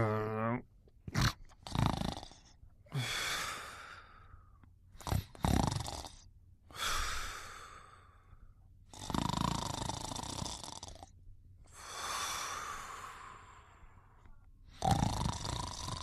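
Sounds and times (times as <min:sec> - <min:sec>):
person snoring: 0:00.0 - 0:04.3, 0:05.0 - 0:08.3, 0:08.9 - 0:11.1, 0:14.8 - 0:16.0.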